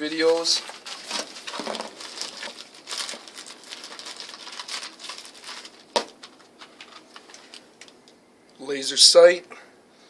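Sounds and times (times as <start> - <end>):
packaging rustling and crinkling: 0.0 - 8.0.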